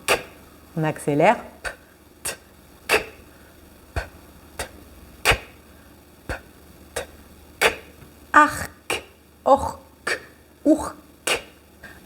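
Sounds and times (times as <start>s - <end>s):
tongue clicks: 0.1s - 0.4s, 1.6s - 3.2s, 4.0s - 5.6s, 6.3s - 8.0s, 10.0s - 10.4s, 11.2s - 12.0s.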